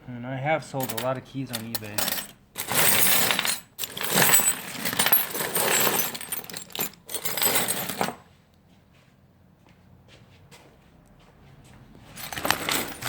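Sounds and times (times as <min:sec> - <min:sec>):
metal keys clattering and jingling: 0:00.8 - 0:08.2, 0:12.1 - 0:13.0.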